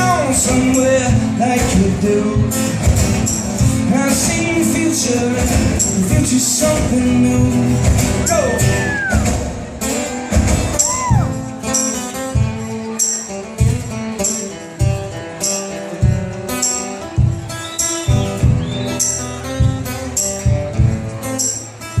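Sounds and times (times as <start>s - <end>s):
guitar chords: 0.0s - 22.0s
kick drum and tambourine beat: 16.0s - 22.0s.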